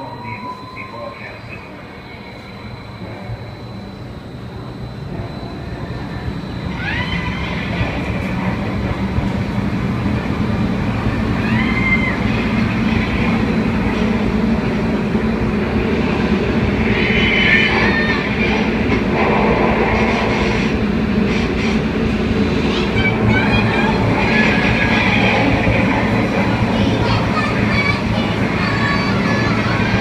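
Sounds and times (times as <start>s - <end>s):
fan-driven wind rushing: 0.0s - 30.0s
high-pitched cries: 6.7s - 7.8s, 11.4s - 12.2s.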